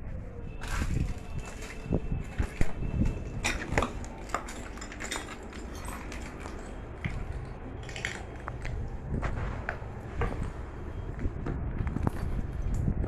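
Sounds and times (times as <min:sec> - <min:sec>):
broken glass crunching underfoot: 0:00.6 - 0:08.8.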